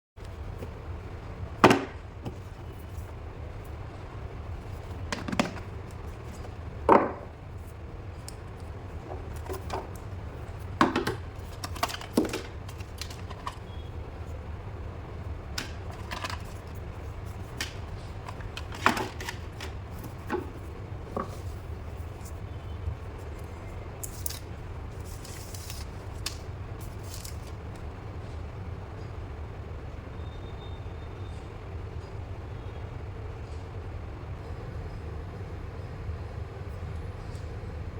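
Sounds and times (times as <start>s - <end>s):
steady low hum: 0.2s - 37.9s
handling cardboard packaging: 4.5s - 14.4s, 15.5s - 27.8s.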